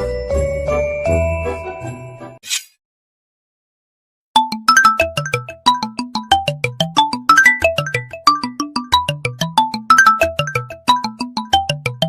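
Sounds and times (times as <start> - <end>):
brief swish of noise: 2.4 - 2.8
phone ringtone melody: 4.4 - 12.0.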